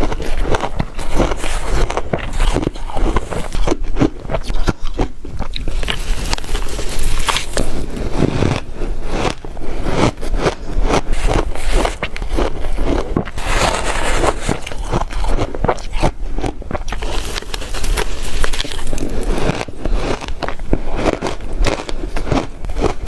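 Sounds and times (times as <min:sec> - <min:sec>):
biting and crunching ice: 0:00.0 - 0:23.0.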